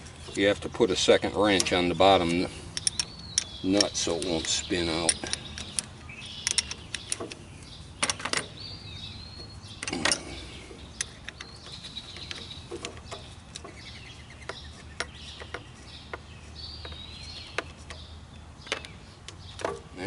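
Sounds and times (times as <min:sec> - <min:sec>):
birds chirping: 0:00.0 - 0:20.0
wrenches clicking on metal: 0:00.3 - 0:07.4, 0:09.3 - 0:18.1.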